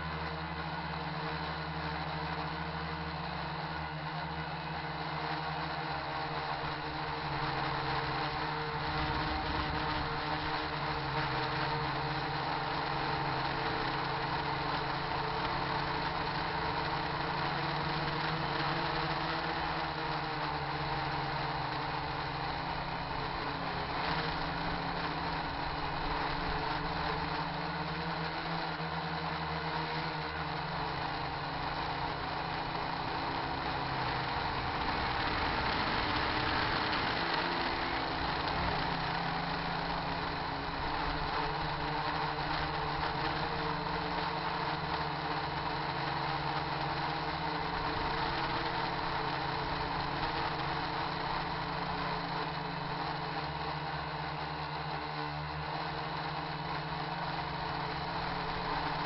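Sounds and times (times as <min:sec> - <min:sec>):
drone propellers whirring: 0:06.2 - 0:52.6.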